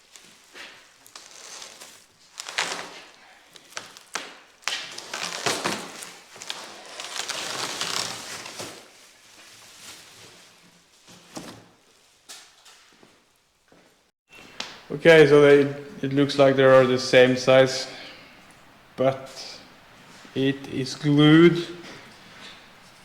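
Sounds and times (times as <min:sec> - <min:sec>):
rustling and scraping: 0:00.0 - 0:13.3, 0:18.3 - 0:23.0.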